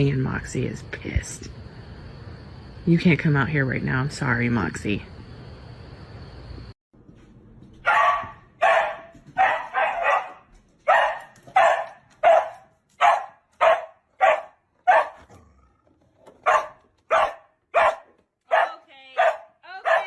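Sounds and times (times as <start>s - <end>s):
dog barking: 7.8s - 15.5s, 16.4s - 20.0s.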